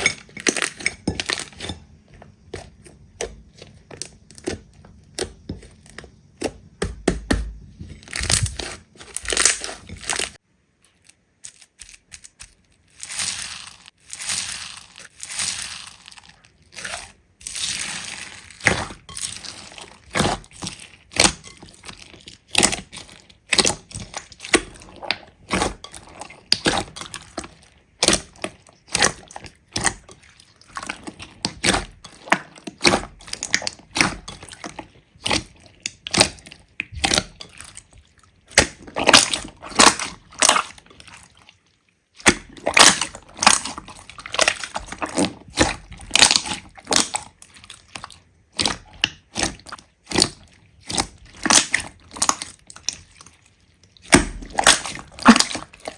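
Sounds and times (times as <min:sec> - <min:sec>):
slime crackling and popping: 0:08.2 - 0:10.4, 0:42.2 - 0:53.0, 0:54.0 - 0:55.9.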